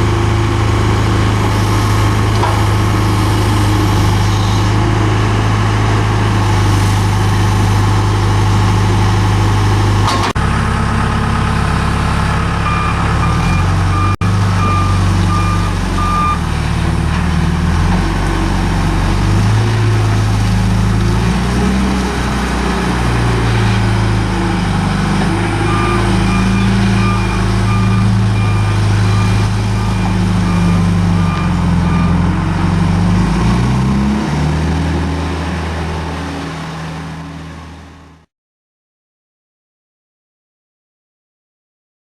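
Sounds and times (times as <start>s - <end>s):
diesel engine running: 0.0s - 38.3s
reverse alarm beeping: 11.8s - 16.5s, 25.5s - 32.4s.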